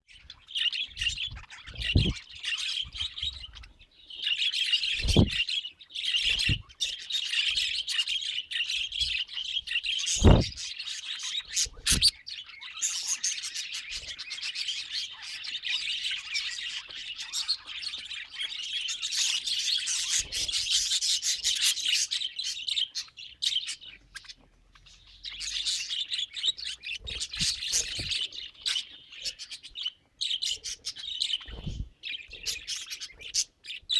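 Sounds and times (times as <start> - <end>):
budgerigars chattering and chirping: 0.1 - 33.9
dull thumps: 1.3 - 2.2, 5.0 - 5.4, 10.2 - 10.6.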